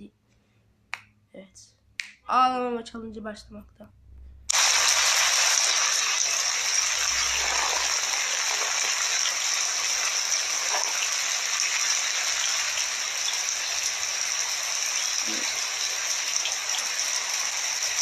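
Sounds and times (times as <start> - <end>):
steady hiss: 4.5 - 18.0.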